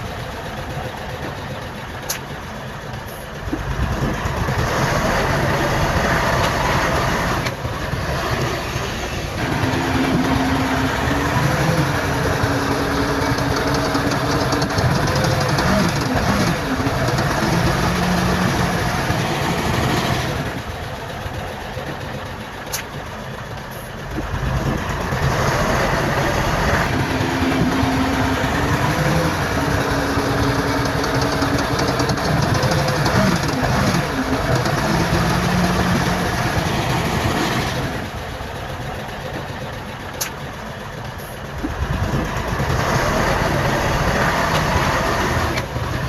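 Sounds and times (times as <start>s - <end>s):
heavy diesel machinery engines: 0.0s - 46.0s
sharp click: 2.1s - 2.3s, 22.7s - 22.9s.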